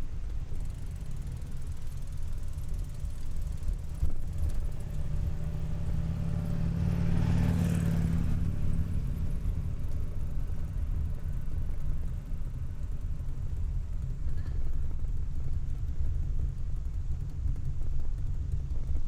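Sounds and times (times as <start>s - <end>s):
steady low rumble: 0.0s - 19.0s
car passing: 4.7s - 11.9s.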